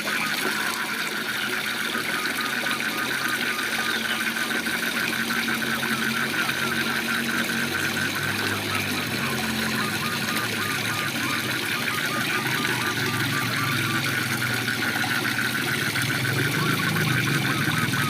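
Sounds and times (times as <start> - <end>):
frogs calling: 0.0 - 18.0
waterfall rushing: 7.2 - 18.0.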